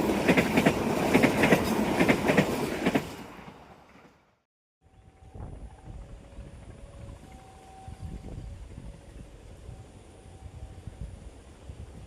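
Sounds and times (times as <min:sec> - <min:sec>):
train passing: 0:00.0 - 0:12.0
faint steady tone: 0:04.9 - 0:12.0
low rumble with wind noise: 0:04.9 - 0:12.0.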